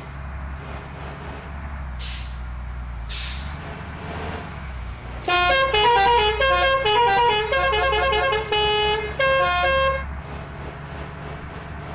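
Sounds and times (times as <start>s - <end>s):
bus engine idling: 0.0s - 4.0s, 4.6s - 11.9s
bus air horns playing a tune: 5.2s - 10.1s.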